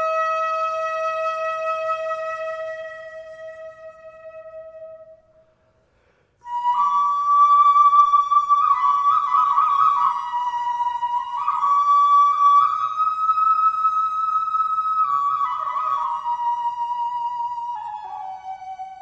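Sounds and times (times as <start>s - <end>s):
flute playing long notes: 0.0s - 5.2s, 6.4s - 19.0s.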